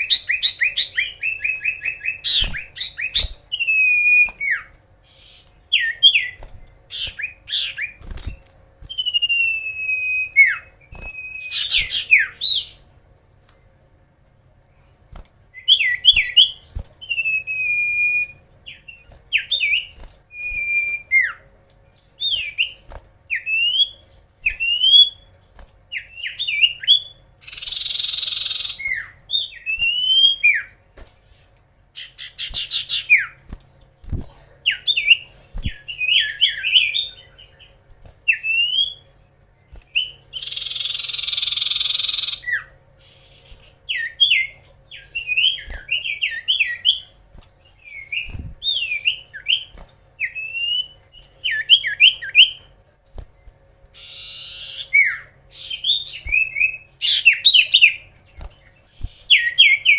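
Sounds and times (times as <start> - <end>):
bird singing whistled chirps: 0.0 - 12.8, 15.6 - 21.4, 22.2 - 25.3, 25.9 - 30.8, 34.7 - 37.5, 38.3 - 39.2, 47.7 - 52.6, 54.0 - 58.0, 59.2 - 59.9.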